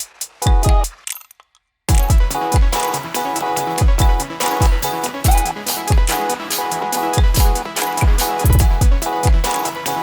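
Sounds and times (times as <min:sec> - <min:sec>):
electronic music: 0:03.8 - 0:09.8
kick drums: 0:07.2 - 0:09.5.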